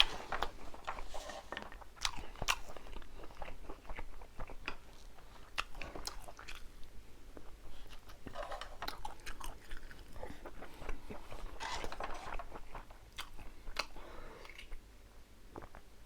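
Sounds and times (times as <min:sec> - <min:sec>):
person chewing crunchy food: 0:00.0 - 0:14.9.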